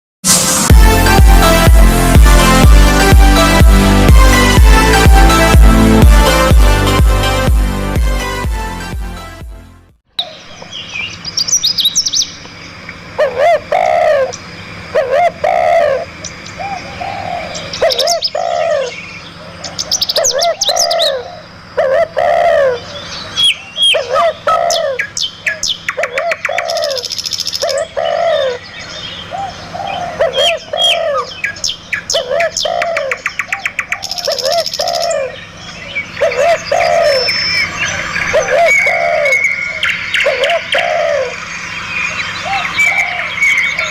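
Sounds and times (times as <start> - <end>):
high bird chirps and trills: 10.2 - 43.9
low bird call: 13.2 - 43.9.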